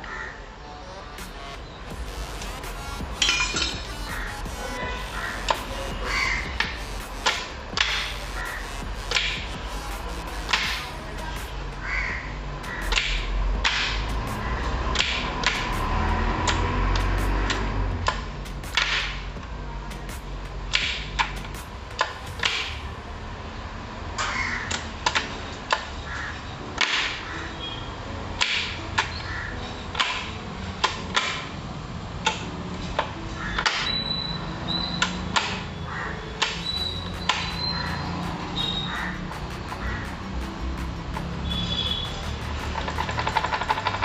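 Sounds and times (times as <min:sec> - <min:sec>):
crows cawing: 0:00.0 - 0:00.4, 0:05.1 - 0:06.5, 0:11.8 - 0:13.0, 0:24.3 - 0:24.8, 0:26.0 - 0:26.4, 0:29.2 - 0:29.6, 0:35.9 - 0:36.2, 0:37.7 - 0:40.2.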